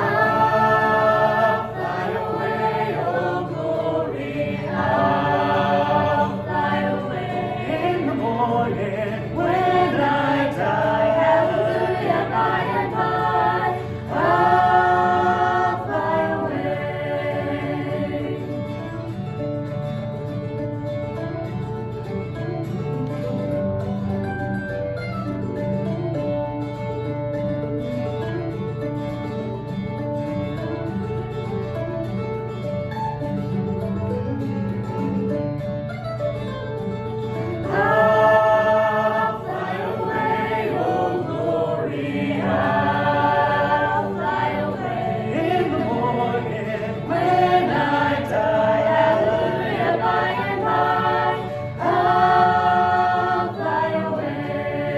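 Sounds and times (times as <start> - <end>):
people singing: 0.0 - 19.1, 37.5 - 54.9
gospel music with guitar: 0.0 - 54.9.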